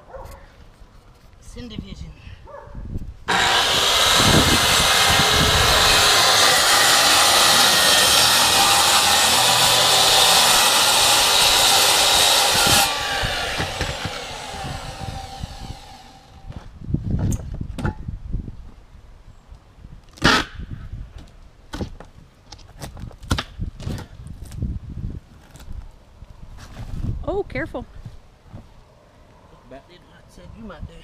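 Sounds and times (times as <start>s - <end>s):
power saw cutting wood: 3.3s - 16.5s.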